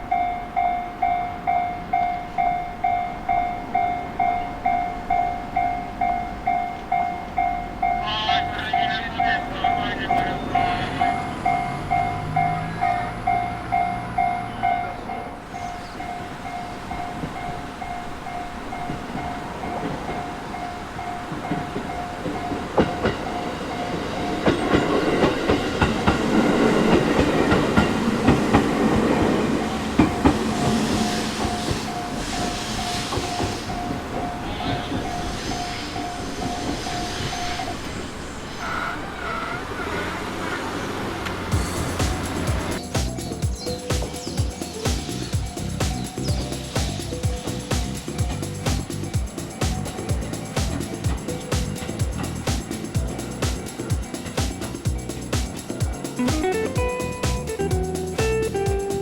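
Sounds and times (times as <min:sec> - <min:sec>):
level crossing alarm ringing: 0:00.0 - 0:38.2
train wheels clattering over rails: 0:00.0 - 0:38.2, 0:39.2 - 0:59.0.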